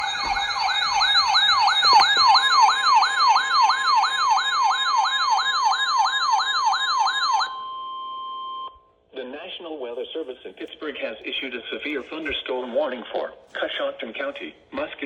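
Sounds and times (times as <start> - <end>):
electronic siren sweeping: 0.0 - 7.6.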